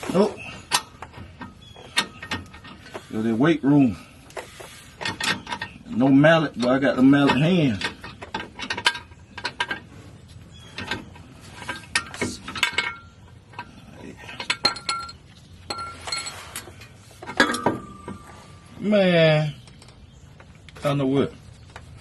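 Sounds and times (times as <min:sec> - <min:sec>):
metallic clinks and knocks: 0:00.7 - 0:02.9, 0:10.6 - 0:18.6.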